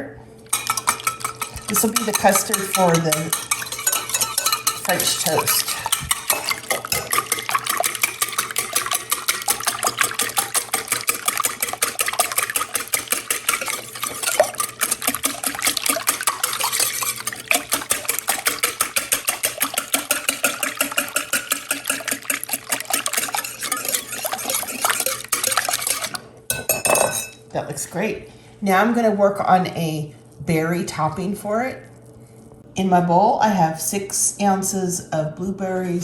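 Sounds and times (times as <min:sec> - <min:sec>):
whisk clicking against bowl: 0:00.5 - 0:26.2.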